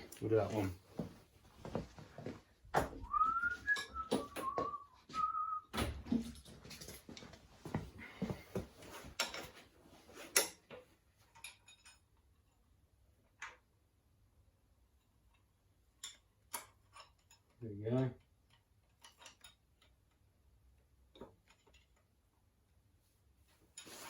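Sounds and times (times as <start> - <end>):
person whistling: 3.0 - 5.7
metal tools clinking: 10.2 - 12.2.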